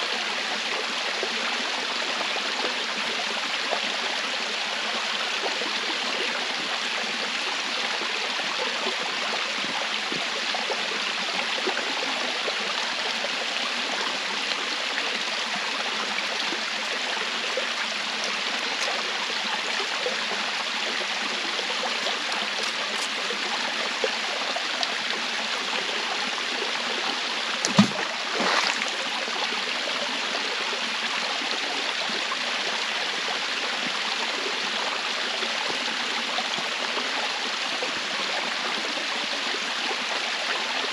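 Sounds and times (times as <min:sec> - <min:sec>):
rushing stream water: 0:00.0 - 0:40.9.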